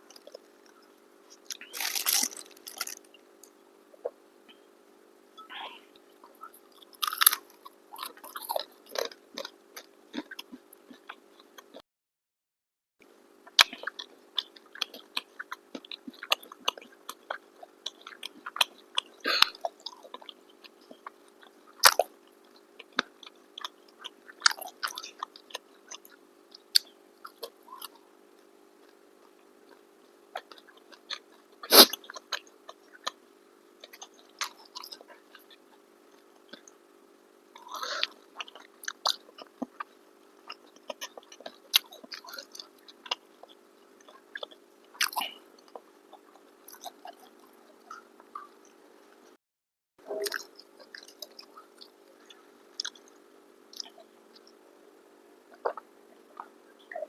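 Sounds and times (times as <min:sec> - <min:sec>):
chewing and biting food: 0:00.0 - 0:04.2, 0:06.2 - 0:11.8, 0:13.5 - 0:28.0, 0:28.8 - 0:33.2, 0:33.8 - 0:36.8, 0:37.6 - 0:48.8, 0:50.1 - 0:54.6, 0:55.5 - 0:57.0
steady low hum: 0:00.0 - 0:11.8.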